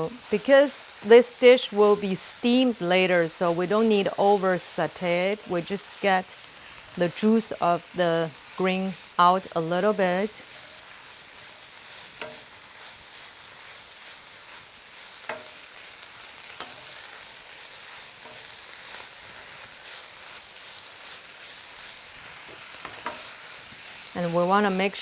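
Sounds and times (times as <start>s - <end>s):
greens sizzling in a pan: 0.0s - 25.0s
utensil stirring and knocking pan: 10.4s - 25.0s.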